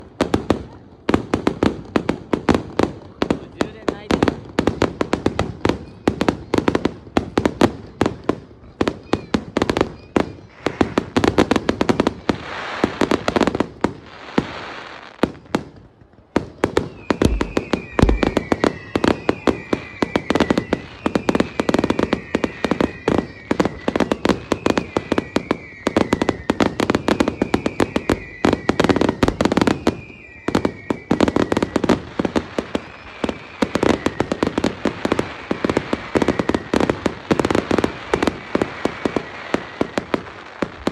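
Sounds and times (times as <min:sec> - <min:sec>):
fireworks bangs and crackling: 0:00.0 - 0:40.9
firework whistle falling in pitch: 0:16.7 - 0:37.0.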